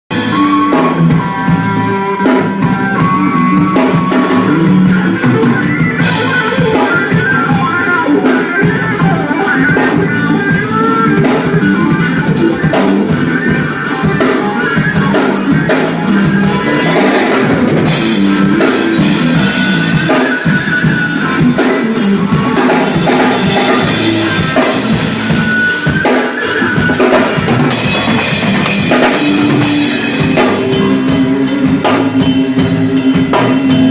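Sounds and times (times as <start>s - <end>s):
distorted electric guitar: 0.1s - 33.9s
drum kit: 0.1s - 33.9s.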